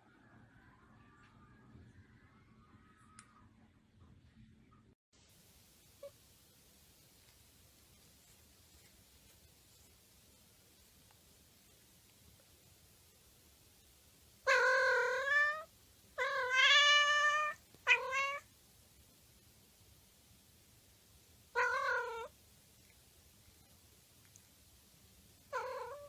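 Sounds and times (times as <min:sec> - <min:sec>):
cat meowing: 0:14.5 - 0:18.5, 0:21.6 - 0:22.3, 0:25.5 - 0:26.0.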